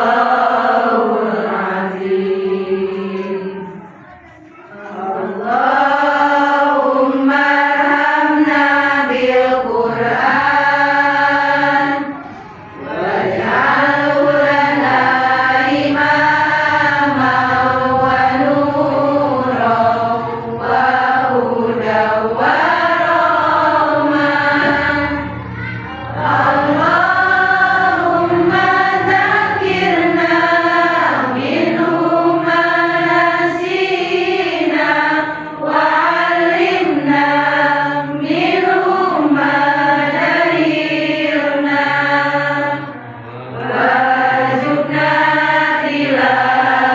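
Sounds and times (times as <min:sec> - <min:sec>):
person chanting melodic recitation: 0:00.0 - 0:04.0, 0:04.7 - 0:46.9.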